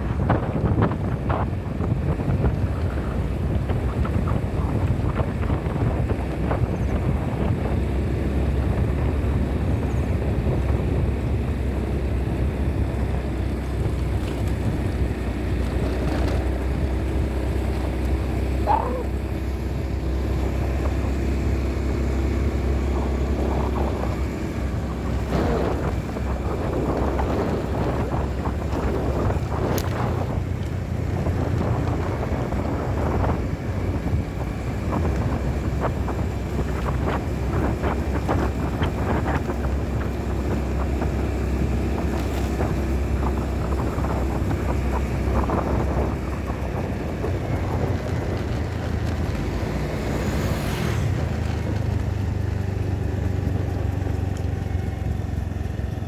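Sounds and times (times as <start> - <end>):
steady low rumble: 0.0 - 56.0
wind buffeting microphone: 0.0 - 56.0.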